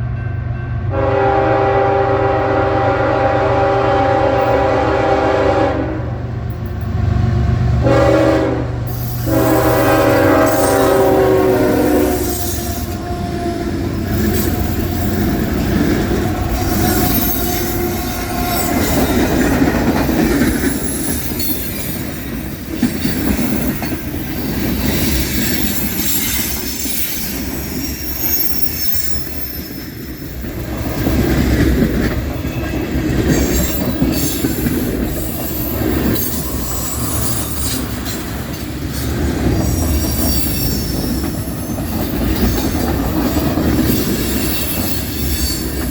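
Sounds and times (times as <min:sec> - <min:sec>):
freight train rumbling past: 0:00.0 - 0:45.9
high-pitched flange squeal: 0:08.9 - 0:19.6, 0:32.4 - 0:38.7
wheels clicking over rail joints: 0:12.2 - 0:45.9.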